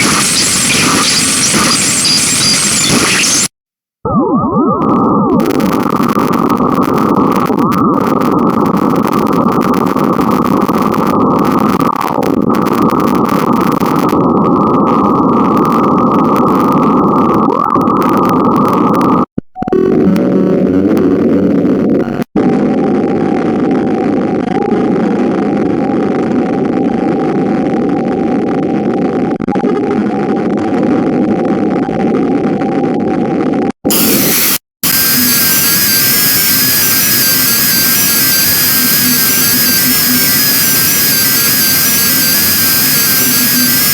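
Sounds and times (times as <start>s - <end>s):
harsh synthesized buzz: 0.0s - 3.5s, 33.9s - 43.9s.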